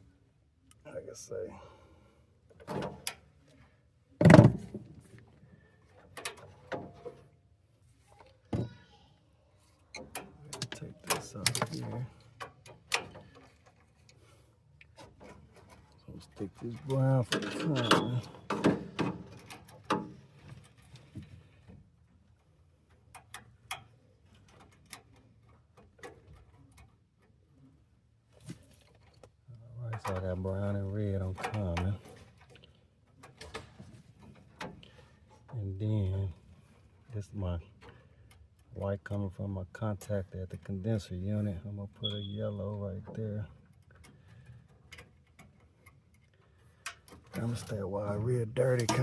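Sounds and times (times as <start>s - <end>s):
handling knocks and clicks: 9.8s - 14.2s, 14.8s - 27.4s, 28.4s - 35.6s, 48.6s - 49.0s.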